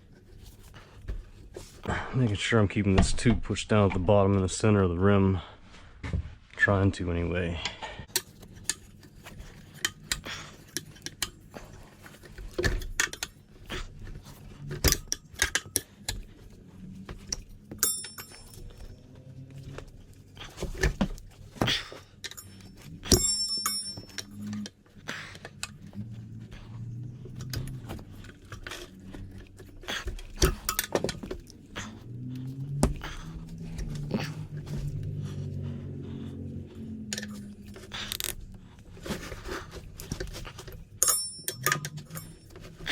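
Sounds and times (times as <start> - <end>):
tire irons clinking on wheel rim: 8.1 - 42.9
metal clanks: 17.1 - 19.1, 20.4 - 25.9, 40.0 - 42.9.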